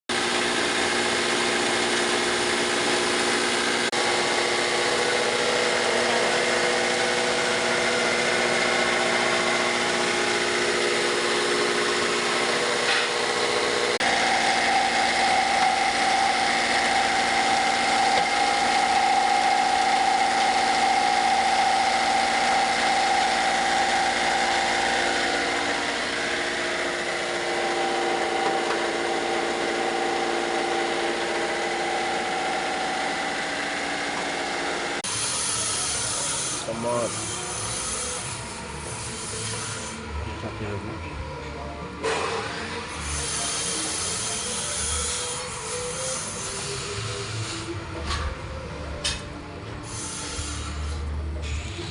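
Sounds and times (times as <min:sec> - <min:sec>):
wood chipper running: 0:00.1 - 0:35.1.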